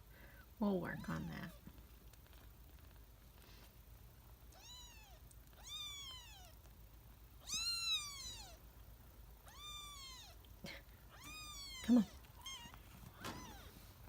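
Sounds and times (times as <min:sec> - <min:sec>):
kitten mewing: 0:07.4 - 0:08.6, 0:09.4 - 0:13.8.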